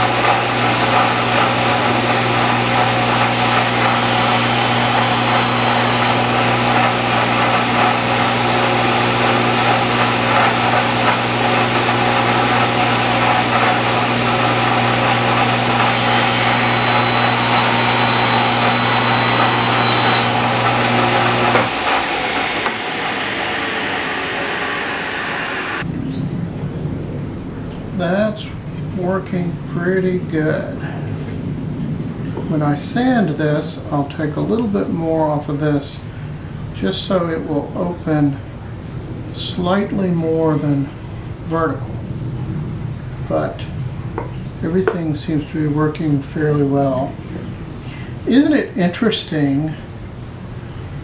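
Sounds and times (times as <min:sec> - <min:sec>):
motor winding down: 0:00.0 - 0:25.8
woodworking power tool cutting wood: 0:00.0 - 0:25.8.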